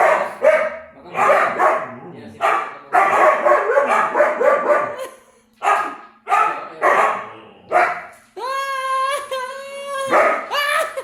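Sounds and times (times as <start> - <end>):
dog barking: 0.0 - 8.1, 10.1 - 10.5.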